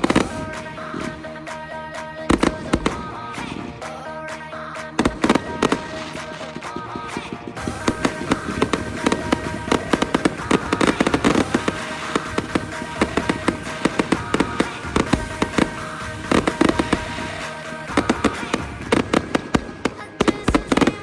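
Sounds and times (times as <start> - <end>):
fireworks bangs and crackles: 0.0 - 21.0
music playing: 0.0 - 21.0.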